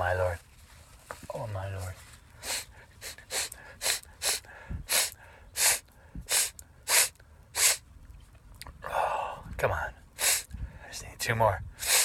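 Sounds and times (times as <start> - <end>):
man breathing sharply: 2.4 - 7.8, 10.2 - 10.9, 11.8 - 12.0.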